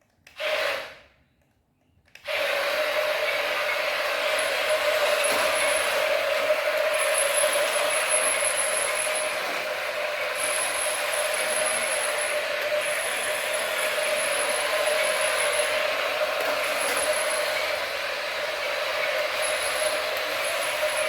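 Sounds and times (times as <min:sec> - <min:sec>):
toy motor and gears whirring: 0:10.2 - 0:21.0.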